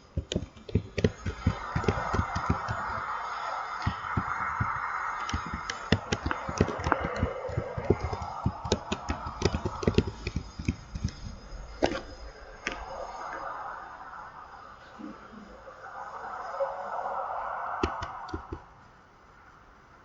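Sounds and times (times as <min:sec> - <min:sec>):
sharp clicks and knocks: 0:00.0 - 0:12.1
steady hiss: 0:00.0 - 0:20.0.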